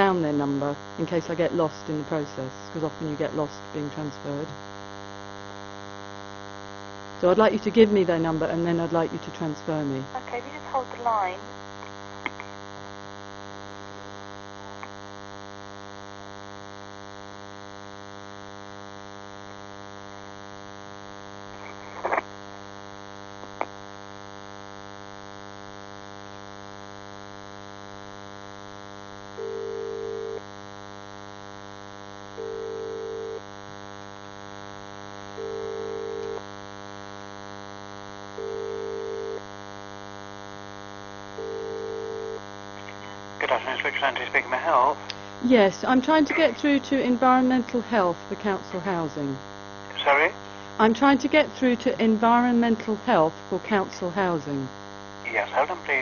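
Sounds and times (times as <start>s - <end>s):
steady electrical hum: 0.0s - 56.0s
telephone ringing tone: 29.4s - 30.4s, 32.4s - 33.4s, 35.4s - 36.4s, 38.4s - 39.4s, 41.4s - 42.4s.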